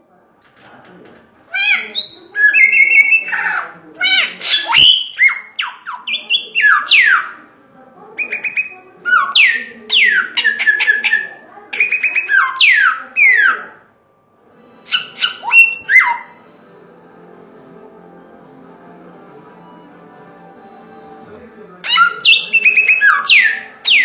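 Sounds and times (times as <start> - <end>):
songbird singing: 1.5 - 7.4, 8.2 - 13.8, 14.9 - 16.4, 21.8 - 24.0.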